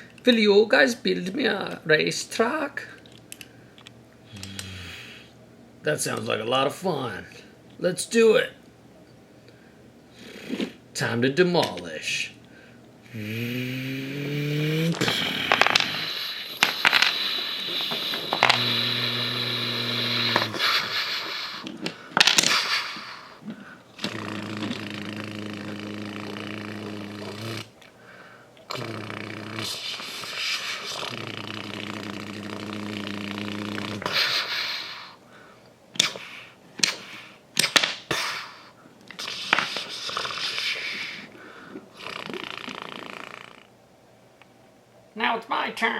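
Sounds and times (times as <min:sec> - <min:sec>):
toy blocks clattering down: 0:14.9 - 0:19.0, 0:21.6 - 0:22.8.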